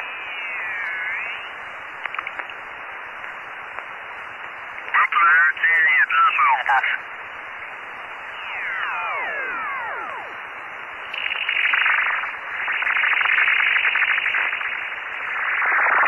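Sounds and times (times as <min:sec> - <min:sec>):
radio static hiss: 0:00.0 - 0:16.0
rushing buzz of rapid pulses: 0:08.3 - 0:16.0.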